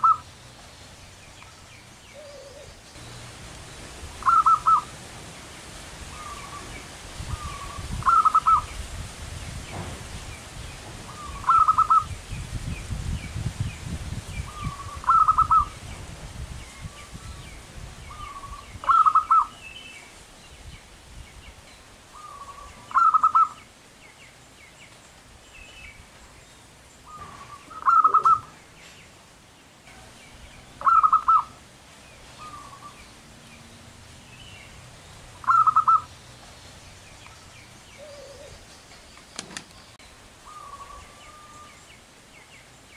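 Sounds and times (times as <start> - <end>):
dove cooing: 0.0 - 0.3, 2.1 - 2.8, 4.1 - 5.0, 6.1 - 8.7, 11.1 - 12.1, 14.5 - 15.8, 18.1 - 19.6, 22.2 - 23.6, 27.1 - 28.6, 30.8 - 31.6, 32.3 - 33.0, 35.4 - 36.1, 38.0 - 38.7, 40.4 - 41.7
bird chirps: 0.0 - 4.9, 6.1 - 8.8, 11.1 - 12.1, 14.4 - 15.8, 16.7 - 20.1, 22.2 - 25.0, 25.6 - 29.0, 29.9 - 42.7.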